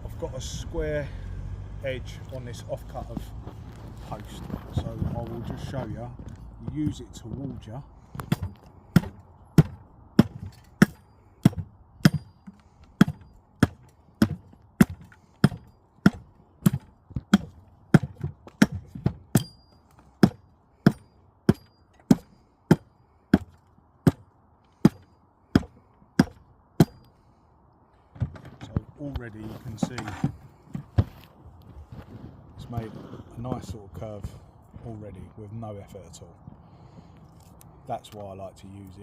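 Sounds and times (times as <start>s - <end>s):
adze chopping wood: 6.2s - 27.1s.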